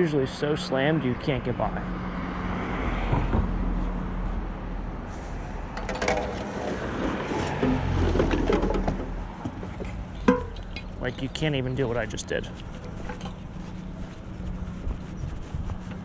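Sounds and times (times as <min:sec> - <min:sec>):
vehicle engine and road rumble: 0:00.0 - 0:16.0.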